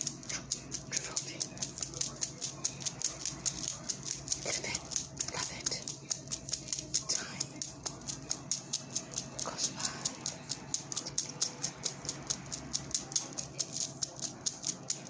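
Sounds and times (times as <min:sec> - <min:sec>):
clock ticking quickly: 0:00.0 - 0:15.0.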